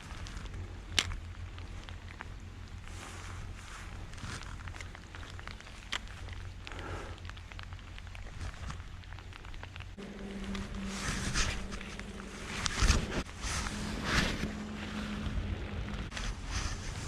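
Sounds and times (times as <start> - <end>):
low engine hum: 0.0 - 17.0
wind buffeting microphone: 8.0 - 17.0.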